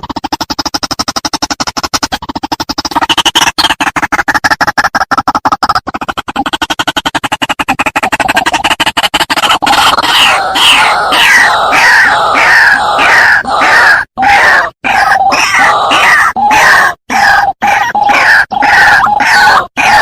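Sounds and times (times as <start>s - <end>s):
waterhen croaking calls: 9.4s - 20.0s.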